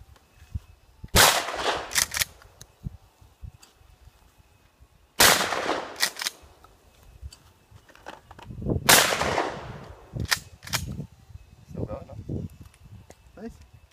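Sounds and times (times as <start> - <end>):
shotgun blasts: 1.2 - 2.3, 5.2 - 6.4, 8.9 - 10.4.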